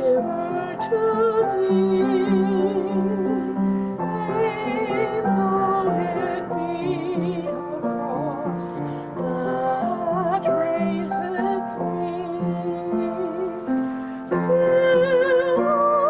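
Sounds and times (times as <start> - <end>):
person singing classically: 0.0 - 16.0
piano accompaniment: 0.0 - 16.0.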